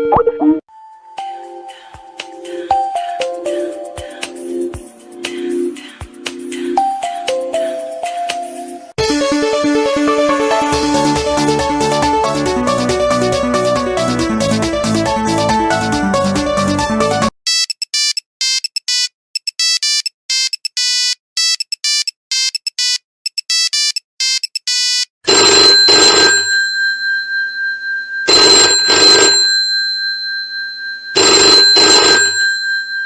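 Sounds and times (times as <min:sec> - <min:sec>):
bell-like ringtone: 0:00.8 - 0:04.8, 0:25.3 - 0:33.0.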